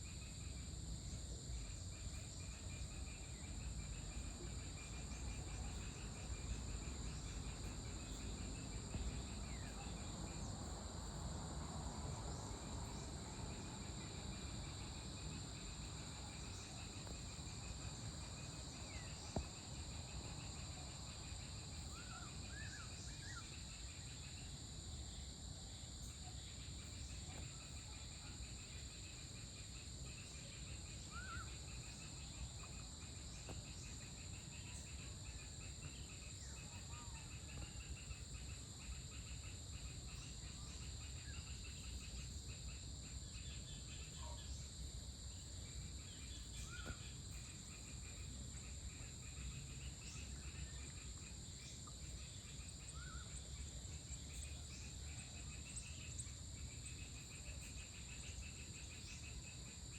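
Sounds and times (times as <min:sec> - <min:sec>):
crickets trilling: 0:00.0 - 0:59.9.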